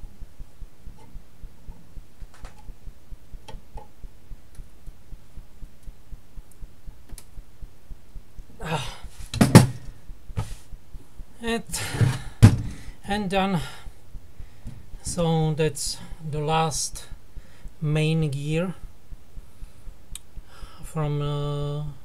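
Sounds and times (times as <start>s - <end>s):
soft low pulse: 0.0s - 22.0s
thump: 9.3s - 10.6s, 12.0s - 12.8s.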